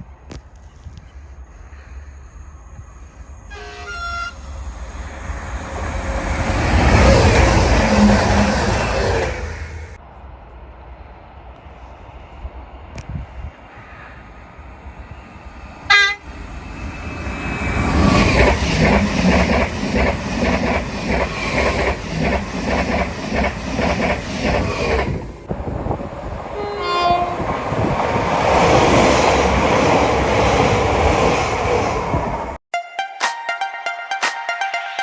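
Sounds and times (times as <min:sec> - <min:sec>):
train horn toot: 0:03.4 - 0:04.6, 0:15.9 - 0:16.3, 0:26.6 - 0:27.4
two-tone train horn: 0:03.4 - 0:04.6, 0:15.9 - 0:16.3, 0:26.6 - 0:27.4
train wheels clattering on rails: 0:15.8 - 0:32.6.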